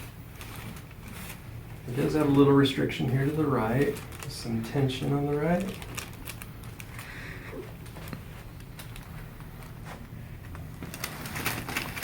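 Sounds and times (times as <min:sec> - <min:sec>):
cloth rustling: 0:00.0 - 0:07.1
low room hum: 0:00.0 - 0:12.0.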